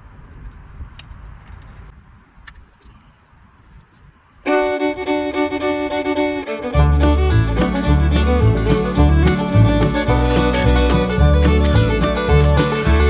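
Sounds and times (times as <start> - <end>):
fiddle music: 4.5 - 13.0
bass line: 5.3 - 13.0.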